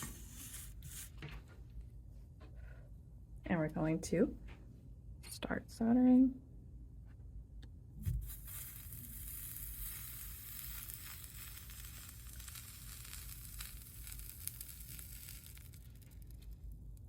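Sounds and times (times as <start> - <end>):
soldering iron sizzling: 0.0 - 1.2, 8.0 - 16.8.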